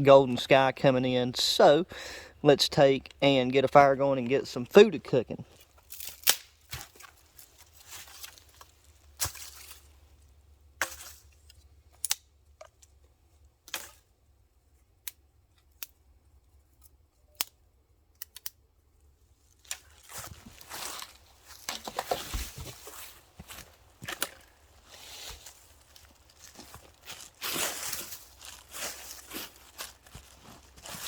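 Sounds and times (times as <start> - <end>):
twigs crunching and rustling: 5.4 - 14.2, 19.4 - 31.0
dry twigs snapping: 5.6 - 9.9, 11.9 - 12.3, 18.2 - 18.6.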